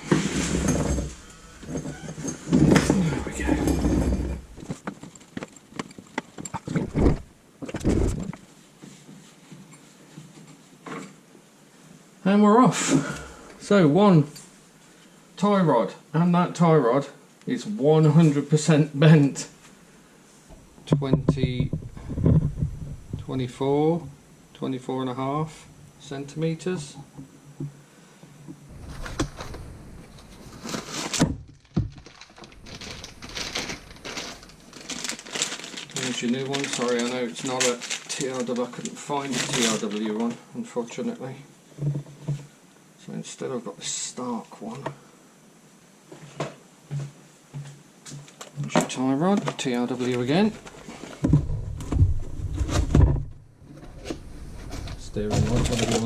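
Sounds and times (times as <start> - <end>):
workshop parts clunks and knocks: 0.0 - 8.4
short rustles: 28.7 - 40.4.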